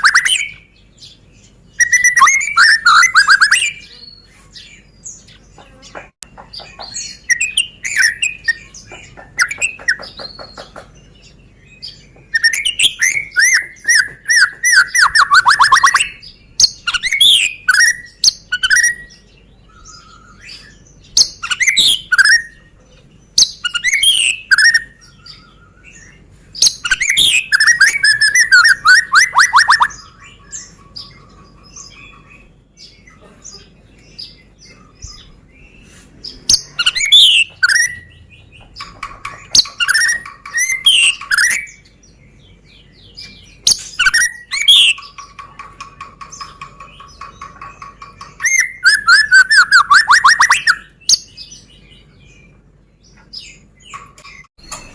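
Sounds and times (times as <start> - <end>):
bird singing whistled phrases: 0.0 - 0.7, 1.8 - 4.3, 7.2 - 8.7, 12.3 - 22.6, 23.4 - 31.0, 36.6 - 38.1, 39.5 - 41.8, 43.6 - 45.0, 48.4 - 51.4.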